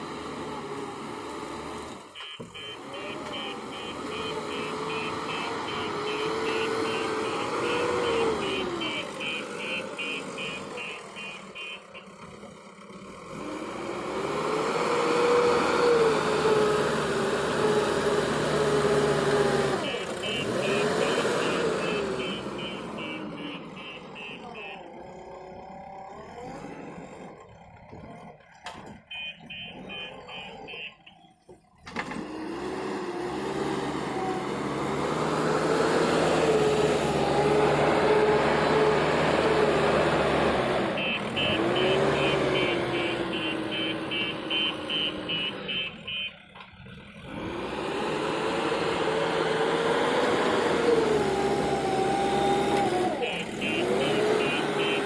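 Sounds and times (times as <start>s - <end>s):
diesel engine revving: 0.0s - 55.0s
reversing alarm beeps: 29.1s - 31.3s, 41.0s - 46.4s.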